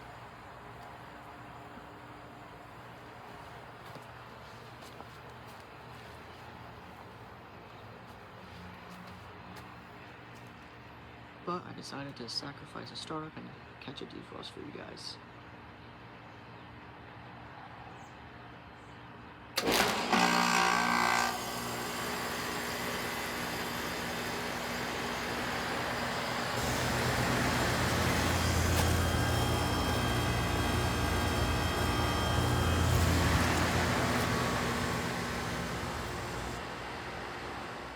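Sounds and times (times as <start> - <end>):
heat pump hiss and hum: 21.1 - 37.9
loud whoosh of refrigerant: 26.5 - 37.9.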